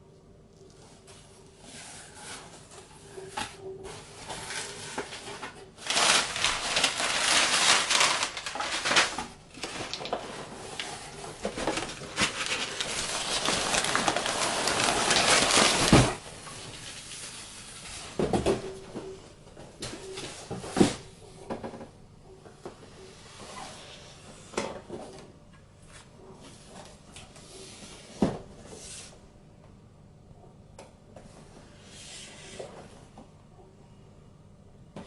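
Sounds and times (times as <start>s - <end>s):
packaging rustling and crinkling: 2.2s - 18.6s.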